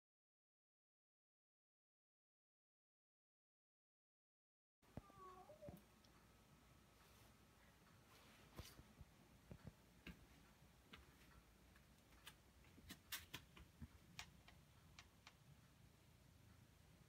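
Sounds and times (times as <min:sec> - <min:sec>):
faint light clicks and taps: 0:07.9 - 0:15.4.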